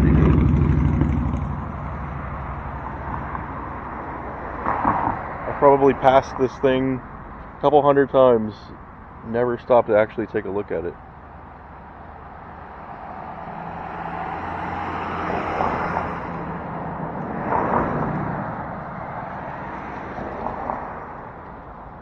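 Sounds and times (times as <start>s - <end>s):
vehicle passing by: 0.0s - 7.1s, 11.1s - 21.9s.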